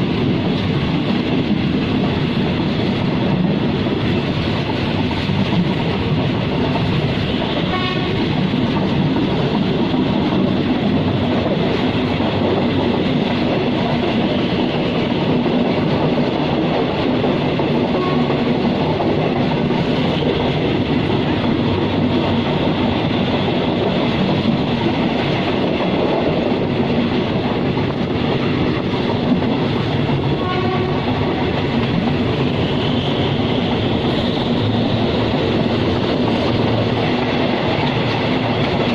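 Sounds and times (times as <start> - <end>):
train wheels rumbling on rails: 0.0 - 38.9
train horn toots: 7.4 - 8.3, 17.9 - 18.4, 30.4 - 31.2.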